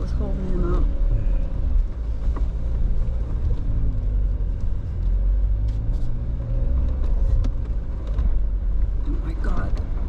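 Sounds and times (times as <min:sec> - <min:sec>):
car engine rumbling at low speed: 0:00.0 - 0:10.0.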